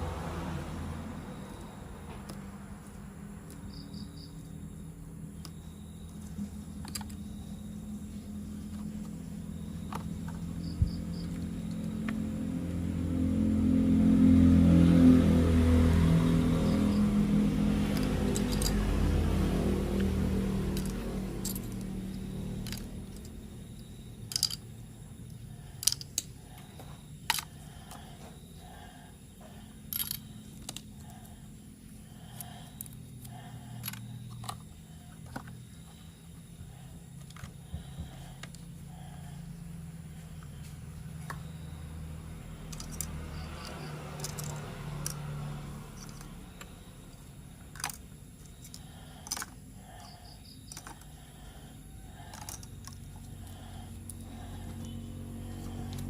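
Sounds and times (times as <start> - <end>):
low steady hum: 0.0 - 56.0
plastic toy parts clicking: 24.3 - 24.6, 25.8 - 26.4, 27.2 - 27.6, 29.9 - 30.8, 44.2 - 45.2, 47.7 - 49.6, 50.7 - 51.1, 52.2 - 53.1
toy train motor humming: 47.8 - 56.0.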